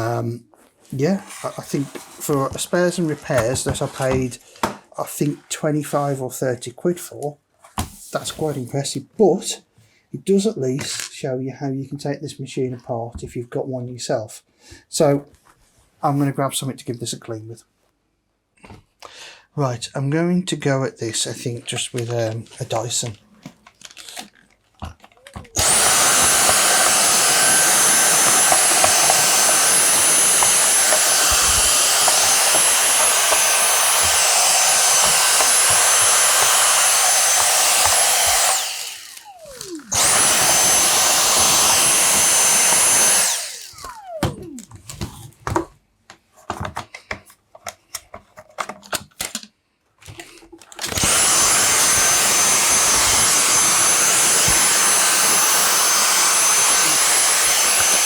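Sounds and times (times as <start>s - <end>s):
vacuum cleaner whining: 0.9s - 5.3s, 23.8s - 45.3s, 50.8s - 58.0s
vacuum motor winding down: 25.2s - 45.0s, 50.8s - 58.0s.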